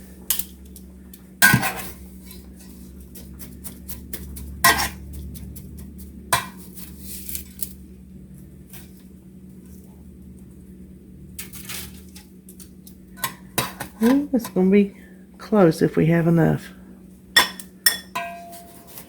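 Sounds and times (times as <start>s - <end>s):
dishes clinking: 17.4s - 19.0s.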